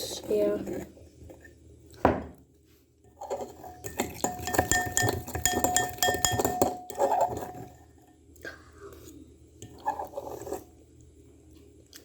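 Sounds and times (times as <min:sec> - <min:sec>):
fork clinking against metal bowl: 0:03.2 - 0:07.8
fork knocking on bowl: 0:03.8 - 0:07.7.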